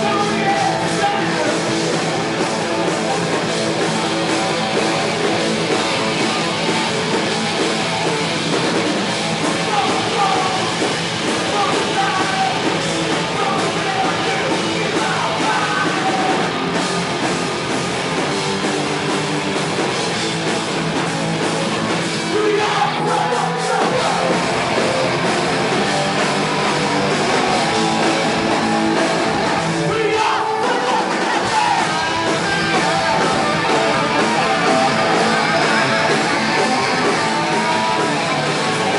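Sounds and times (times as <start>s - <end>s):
distorted electric guitars: 0.0s - 38.9s
drums: 0.0s - 38.9s
person yelling vocals: 29.5s - 33.0s.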